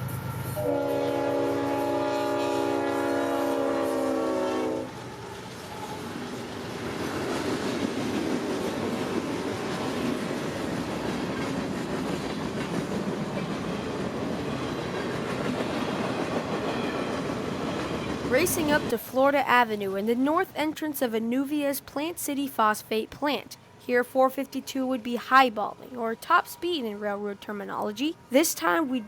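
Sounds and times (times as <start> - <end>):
train horn: 0.0 - 5.2
train rumbling on rails: 0.0 - 20.5.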